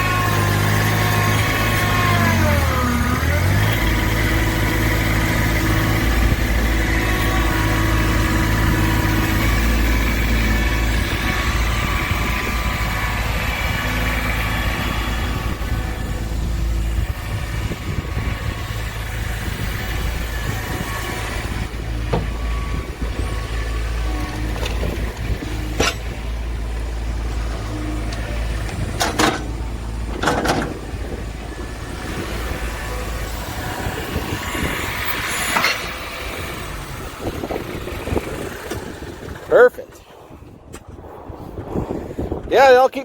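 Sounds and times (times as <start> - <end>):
diesel tractor running under load: 0.0 - 43.0.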